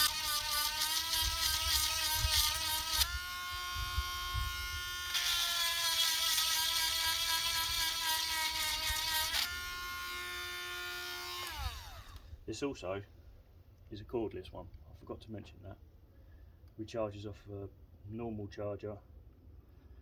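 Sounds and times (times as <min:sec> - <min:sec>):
rotary tool motor whining: 0:00.0 - 0:12.4.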